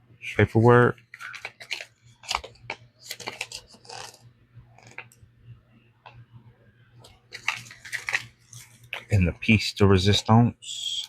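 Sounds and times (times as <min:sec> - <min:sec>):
paper and cardboard rustling: 0:01.1 - 0:04.2, 0:07.3 - 0:09.2.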